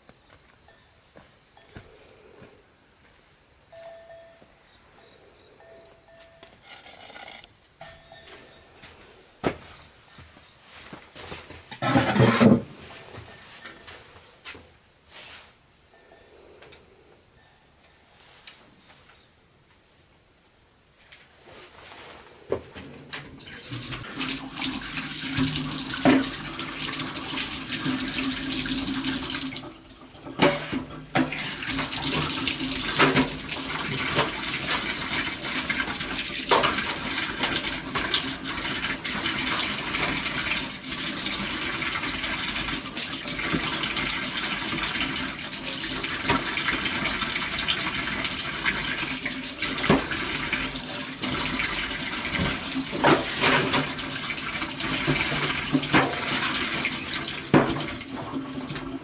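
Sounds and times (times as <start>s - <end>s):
running water: 23.3s - 59.0s.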